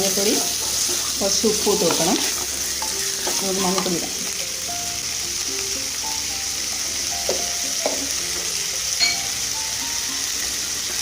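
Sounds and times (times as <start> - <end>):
chicken sizzling in hot oil: 0.0 - 11.0
metallic tap on pan: 9.0 - 9.2.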